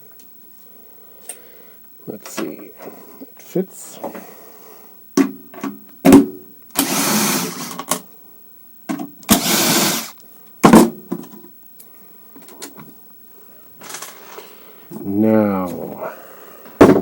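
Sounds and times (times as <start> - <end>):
power screwdriver motor running: 6.8 - 7.8, 9.3 - 10.1.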